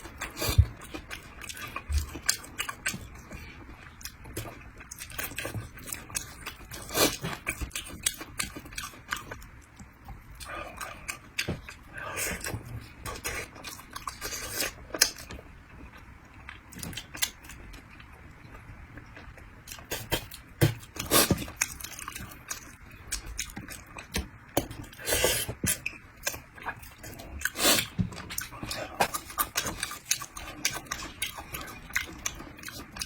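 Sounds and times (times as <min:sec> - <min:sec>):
person chewing wetly: 0:00.1 - 0:33.0.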